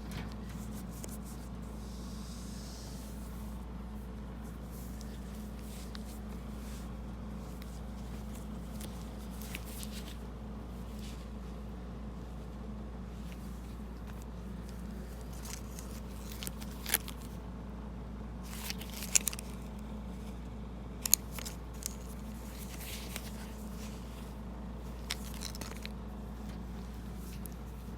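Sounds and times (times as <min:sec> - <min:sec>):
steady low hum: 0:00.0 - 0:27.9
packaging crinkling and rustling: 0:07.4 - 0:11.2, 0:13.2 - 0:17.4, 0:18.4 - 0:19.8, 0:21.0 - 0:27.9.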